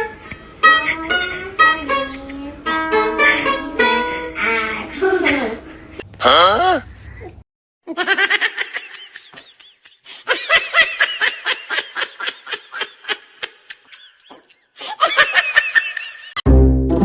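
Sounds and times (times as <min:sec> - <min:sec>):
high-pitched human laughter: 0:07.9 - 0:16.4.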